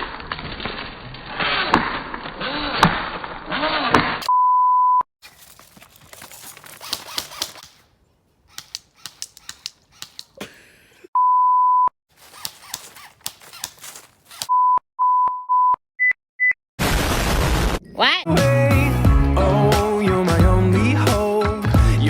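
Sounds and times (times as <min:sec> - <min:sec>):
censor bleeps: 0:04.3 - 0:05.0, 0:11.2 - 0:11.9, 0:14.5 - 0:16.6
sharp clicks: 0:06.2 - 0:07.9, 0:08.5 - 0:10.4, 0:12.2 - 0:14.5
faint rustling: 0:12.1 - 0:14.5.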